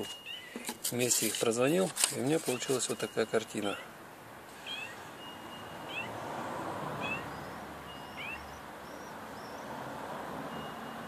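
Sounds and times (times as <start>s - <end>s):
fainter wavering higher calls: 4.5s - 6.3s, 7.0s - 9.8s
short high-pitched animal calls: 4.6s - 5.1s.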